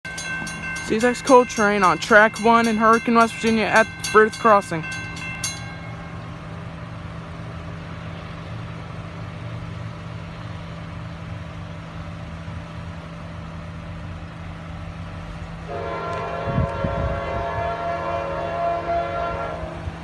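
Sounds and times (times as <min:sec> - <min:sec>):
diesel locomotive rumble: 0:00.0 - 0:20.0
train horn: 0:15.6 - 0:20.0.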